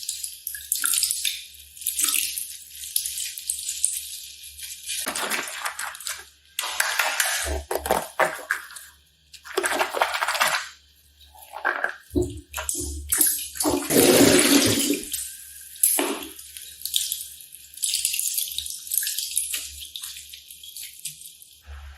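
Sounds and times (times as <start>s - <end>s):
wet splashy slime squelching: 4.6s - 21.1s.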